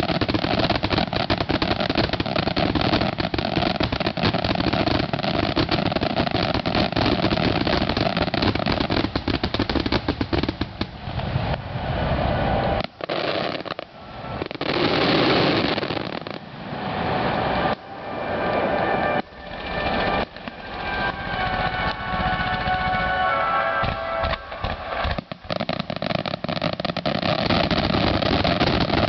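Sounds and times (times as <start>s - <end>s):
fireworks bangs and crackling: 0.0s - 29.0s
rushes of noise: 11.0s - 27.1s.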